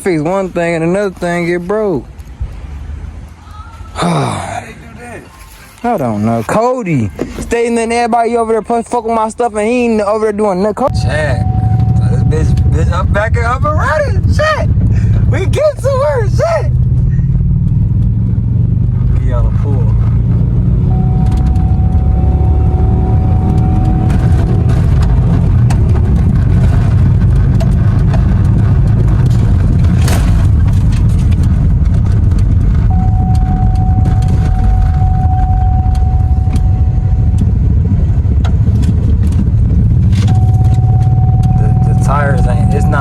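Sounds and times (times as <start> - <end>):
thin steady tone: 10.9 - 13.7, 20.9 - 24.5, 32.9 - 37.6, 40.3 - 43.0
car engine running: 10.9 - 43.0.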